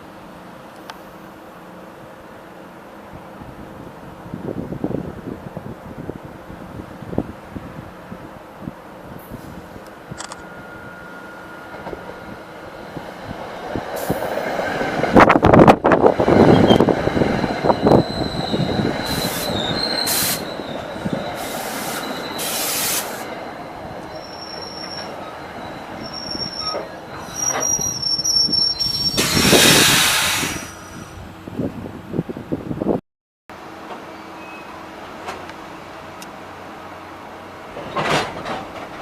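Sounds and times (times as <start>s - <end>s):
train passing: 0.0s - 31.9s
steel wheels squealing: 16.2s - 31.2s, 34.0s - 34.8s.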